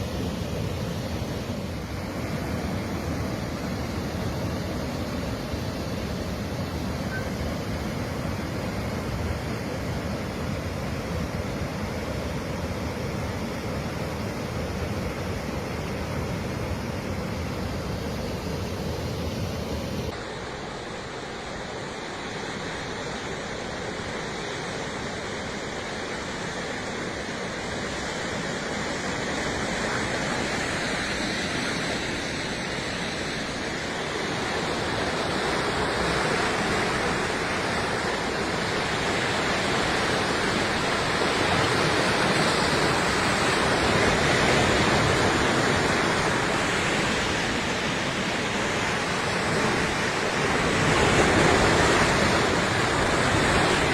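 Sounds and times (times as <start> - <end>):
waterfall rushing: 26.8 - 53.9.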